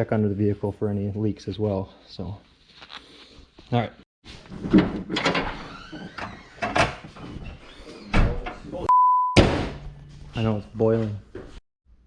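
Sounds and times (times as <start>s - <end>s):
censor beep tone: 8.9s - 9.4s.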